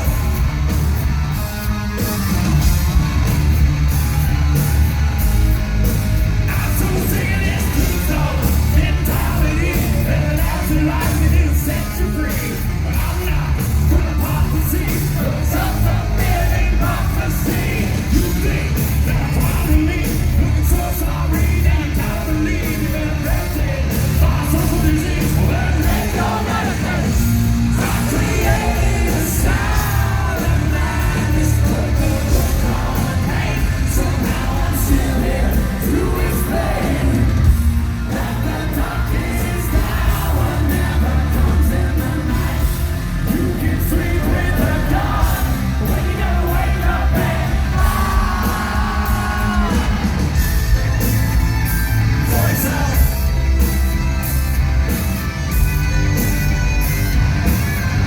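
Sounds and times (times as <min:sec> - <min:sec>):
live rock band playing: 0:00.0 - 0:58.0.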